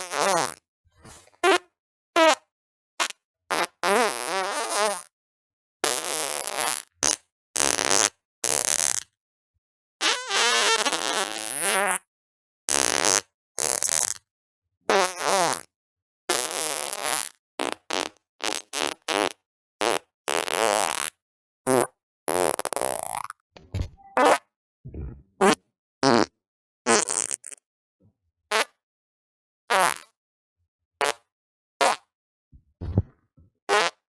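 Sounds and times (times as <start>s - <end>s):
fart sounds: 23.6s - 25.6s, 32.6s - 34.0s.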